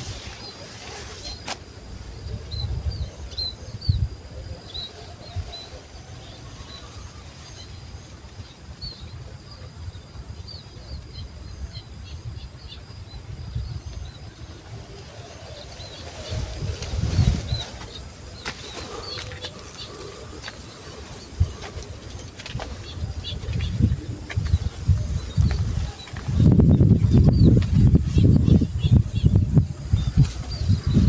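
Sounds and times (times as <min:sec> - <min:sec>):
small birds chirping: 0:00.0 - 0:31.0
wind rumble on microphone: 0:00.0 - 0:31.0.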